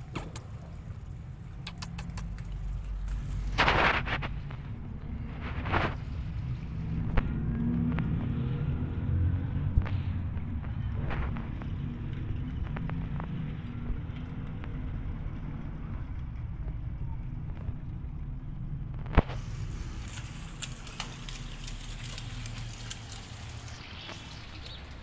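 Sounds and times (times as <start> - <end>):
crackling: 0.0 - 8.5, 9.8 - 25.0
engine rumble: 0.0 - 25.0
sharp click: 1.6 - 2.5.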